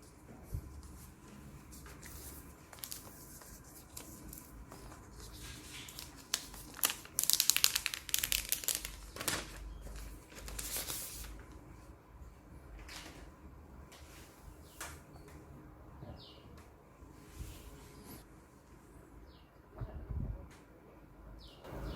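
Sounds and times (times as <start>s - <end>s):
packaging wrap crinkling and tearing: 5.4s - 11.3s.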